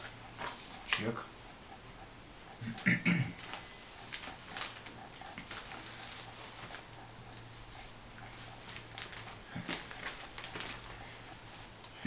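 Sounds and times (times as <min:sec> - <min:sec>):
packaging rustling and crinkling: 0:08.7 - 0:10.9.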